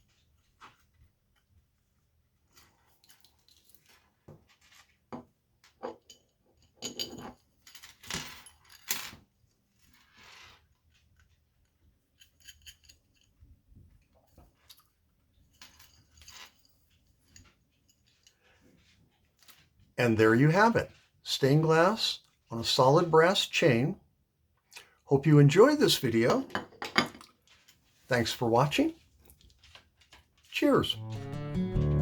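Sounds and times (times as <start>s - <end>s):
metal chain clinking: 15.5s - 16.7s.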